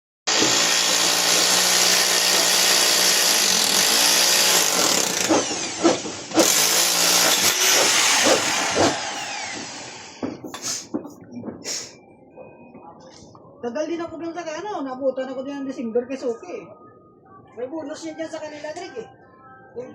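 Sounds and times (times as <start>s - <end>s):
power tool running: 0.3s - 10.4s
knocks: 7.8s - 11.6s.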